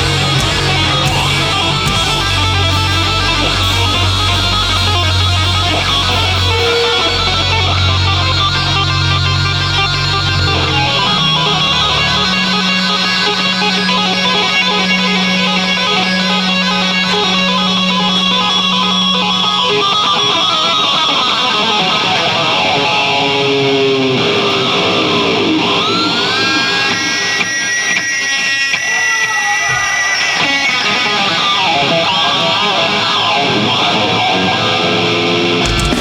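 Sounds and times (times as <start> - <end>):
metal band playing: 0.0 - 28.0, 29.9 - 36.0
lead guitar bending notes: 0.0 - 28.4.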